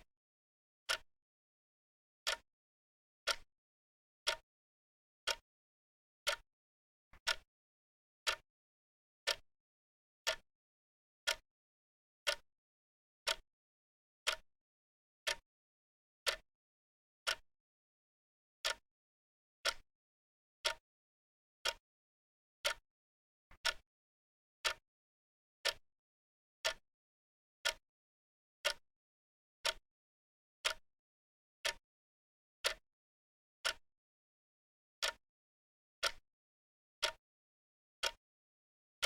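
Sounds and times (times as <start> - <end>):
wrist watch ticking: 2.2 - 2.5, 3.2 - 3.5, 4.2 - 4.4, 5.2 - 5.4, 6.2 - 6.4, 8.2 - 8.4, 9.2 - 9.4, 10.2 - 10.4, 12.2 - 12.4, 13.2 - 13.4, 14.2 - 14.4, 16.2 - 16.5, 19.6 - 19.8, 20.6 - 20.8, 21.6 - 21.8, 22.6 - 22.8, 23.5 - 23.8, 24.6 - 24.8, 25.6 - 25.8, 26.6 - 26.8, 27.6 - 27.8, 28.6 - 28.8, 29.6 - 29.8, 30.6 - 30.8, 31.6 - 31.8, 32.6 - 32.8, 33.6 - 33.8, 35.0 - 35.2, 36.0 - 36.2, 37.0 - 37.2, 38.0 - 38.2.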